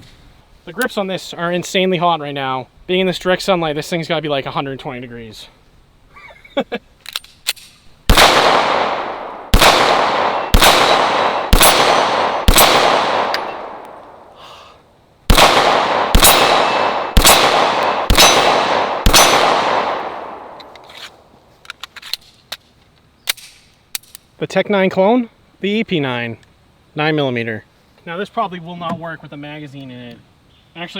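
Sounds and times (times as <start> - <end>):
bullets hitting steel target: 7.5 - 14.1, 15.3 - 20.8
pistol shots with echo: 8.1 - 14.3, 15.3 - 20.8.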